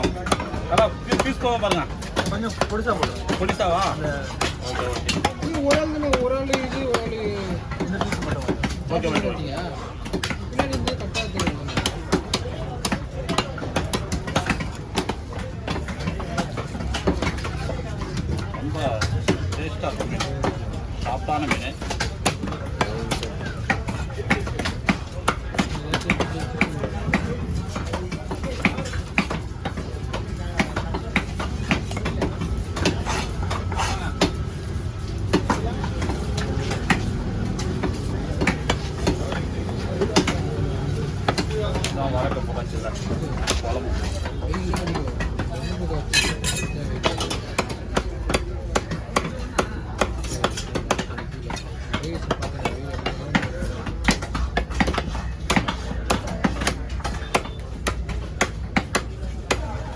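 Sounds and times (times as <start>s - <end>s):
faint voices: 0.0s - 59.9s
knife chopping fish: 46.1s - 59.9s.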